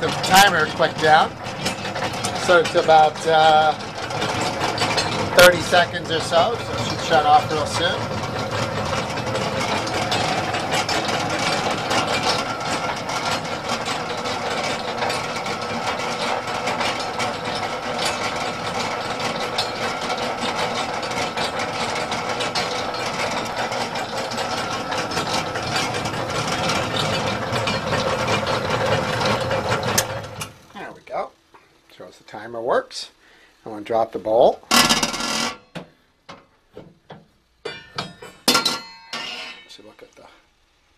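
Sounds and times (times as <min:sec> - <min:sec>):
stand mixer running: 0:00.0 - 0:30.8.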